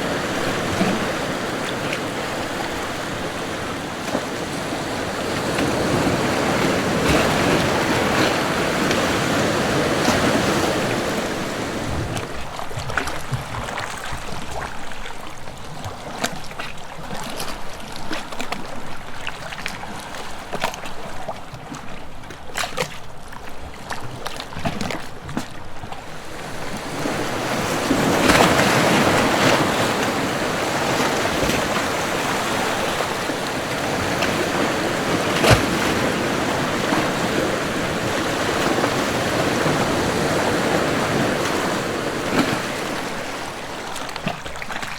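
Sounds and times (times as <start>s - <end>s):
waves surging on rocky shore: 0.0s - 12.8s, 26.0s - 44.9s.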